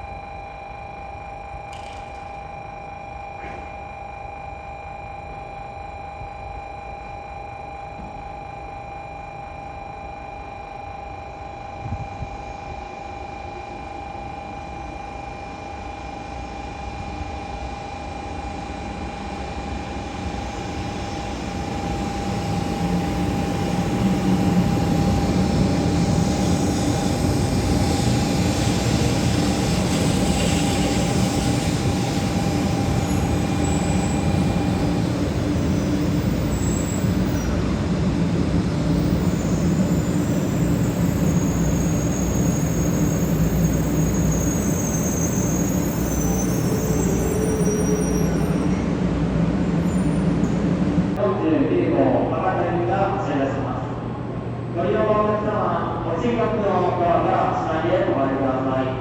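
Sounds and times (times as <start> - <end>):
steady high tone: 0.0 - 51.3
train running noise: 11.6 - 59.0.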